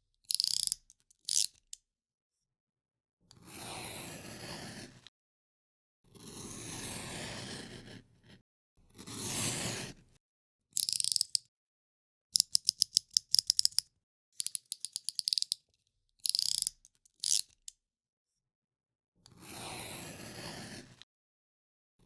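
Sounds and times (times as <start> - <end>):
utility knife blade ratcheting: 0.2 - 1.8, 10.8 - 11.5, 12.4 - 13.8, 14.4 - 15.6, 16.2 - 17.7
blade cutting through material: 8.9 - 10.0, 19.4 - 20.9.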